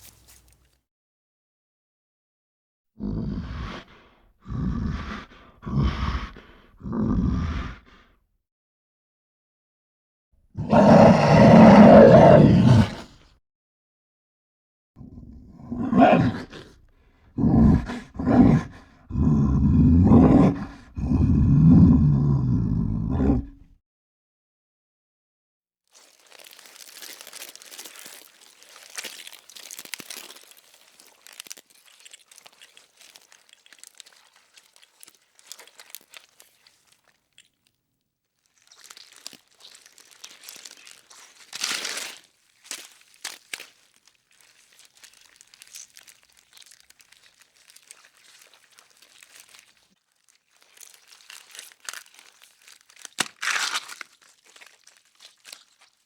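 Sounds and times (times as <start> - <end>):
loud crunches: 0.0 - 0.7, 26.0 - 37.7, 38.4 - 56.0
crumpling and crinkling: 0.0 - 0.8, 25.9 - 56.0.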